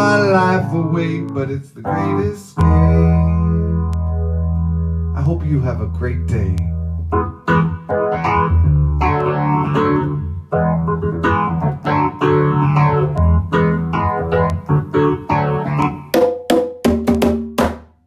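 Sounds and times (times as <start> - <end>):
plucked guitar pattern: 0.0 - 17.3
low bass: 2.6 - 15.8.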